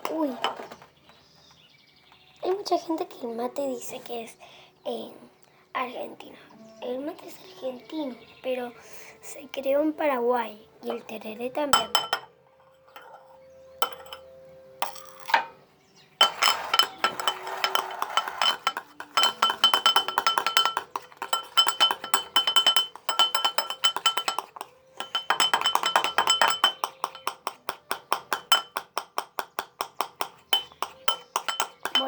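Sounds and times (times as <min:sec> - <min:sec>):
spoon clinking against glass: 0:10.8 - 0:15.6, 0:16.2 - 0:32.0.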